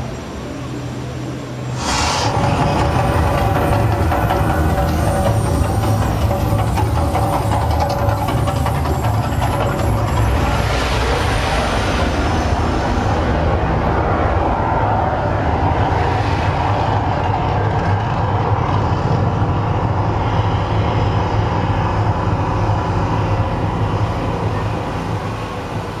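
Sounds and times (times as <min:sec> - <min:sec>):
roaring hiss: 0:00.7 - 0:17.0
deep rumble: 0:01.5 - 0:26.0.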